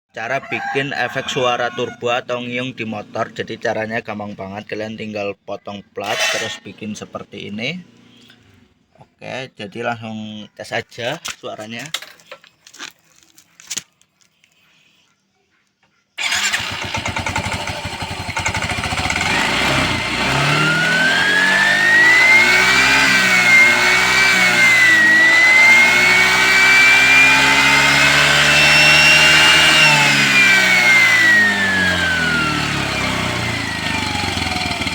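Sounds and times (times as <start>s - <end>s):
motorcycle engine revving: 6.0s - 8.7s, 16.2s - 34.9s.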